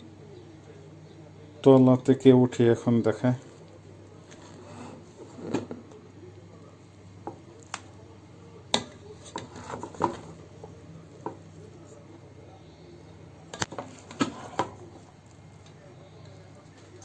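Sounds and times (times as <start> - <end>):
low steady hum: 0.0 - 17.0
spoon scraping rice in pot: 4.2 - 5.7, 9.1 - 10.4.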